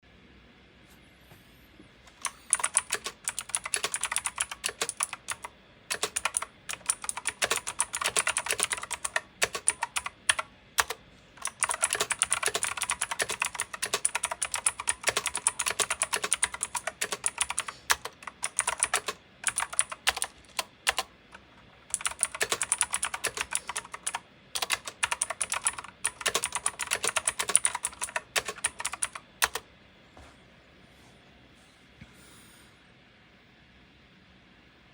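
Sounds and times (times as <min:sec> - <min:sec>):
mechanical keyboard typing: 0:02.1 - 0:29.7.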